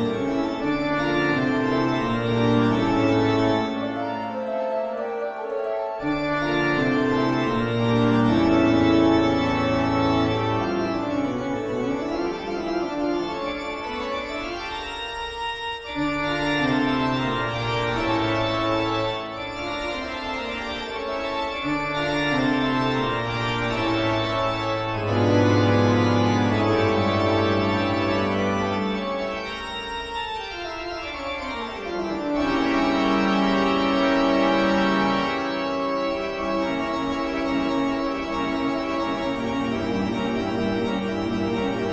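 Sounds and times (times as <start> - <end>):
eerie organ music: 0.0 - 41.9.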